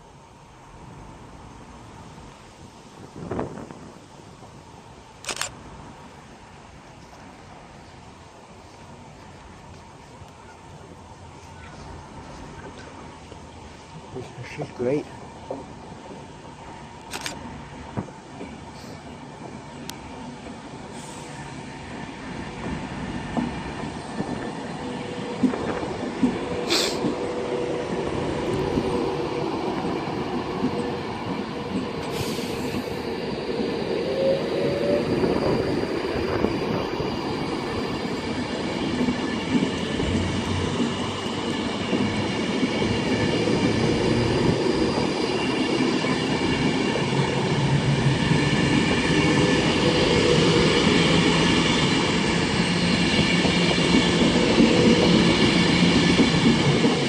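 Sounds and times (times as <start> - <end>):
train wheels rumbling: 5.4 - 57.0
high steady ringing tones: 33.3 - 40.1.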